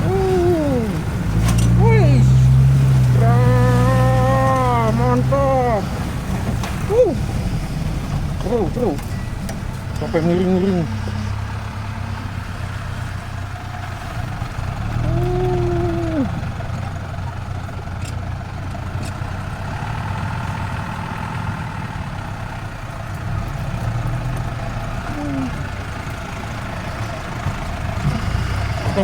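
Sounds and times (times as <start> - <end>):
long drawn-out call: 0.0 - 1.2, 15.0 - 16.4
rough track ride noise: 0.0 - 29.0
vehicle engine running: 0.0 - 29.0.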